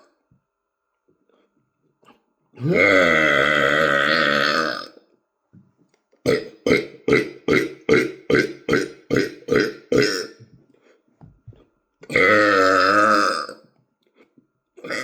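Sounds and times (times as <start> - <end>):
long burp: 2.6 - 5.0, 6.3 - 10.4, 12.0 - 13.7, 14.8 - 15.0
short loud burps: 2.6 - 5.0, 6.3 - 10.4, 12.0 - 13.6, 14.8 - 15.0.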